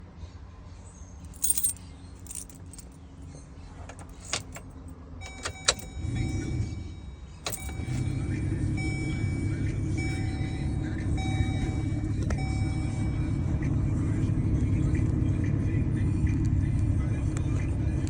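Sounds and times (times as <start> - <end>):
engine running low rumble: 0.0 - 18.0
keys jangling and clicking: 1.3 - 5.9, 7.4 - 8.2
steady high warning tone: 5.2 - 14.0.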